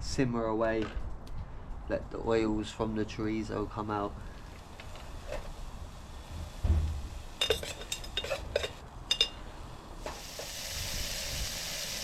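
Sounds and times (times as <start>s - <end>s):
sausage sizzling in oil: 3.8s - 12.0s
metal utensil clinking on can: 7.4s - 9.4s.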